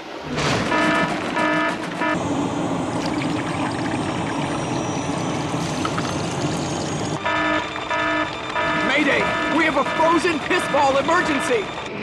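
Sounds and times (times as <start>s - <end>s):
electronic alarm beeping: 0.6s - 2.2s, 3.2s - 12.0s
liquid gushing: 2.8s - 6.4s.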